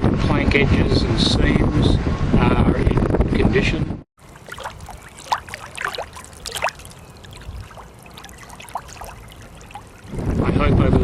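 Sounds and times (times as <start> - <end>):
water plinks and drips: 4.2 - 10.4
water trickling and lapping: 4.2 - 10.4.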